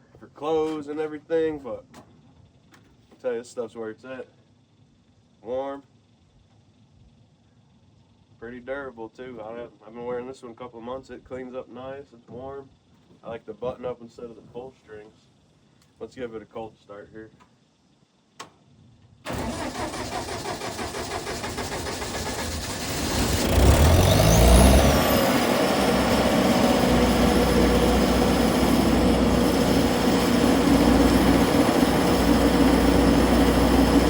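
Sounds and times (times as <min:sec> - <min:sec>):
engine revving and idling: 0:19.3 - 0:34.0
engine starter cranking: 0:19.3 - 0:34.0.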